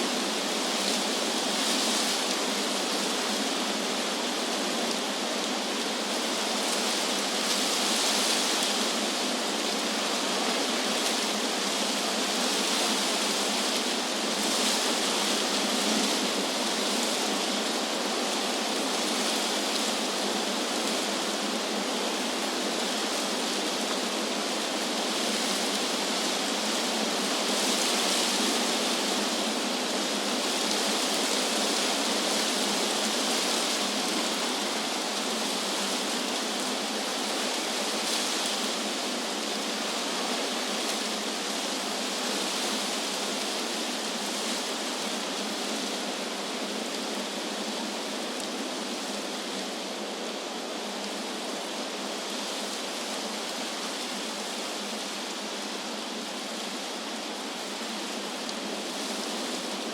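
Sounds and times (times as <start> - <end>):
wind blowing through leaves: 0.0 - 59.9.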